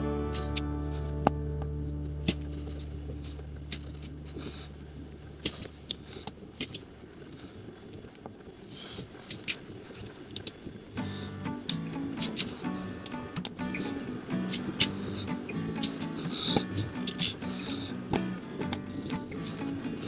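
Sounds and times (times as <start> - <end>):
background music: 0.0 - 4.6, 11.0 - 20.0.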